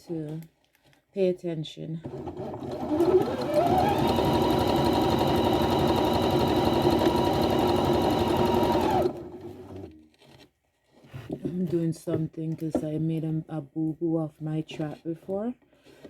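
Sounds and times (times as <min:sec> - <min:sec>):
electric sewing machine stitching: 0:02.0 - 0:10.0.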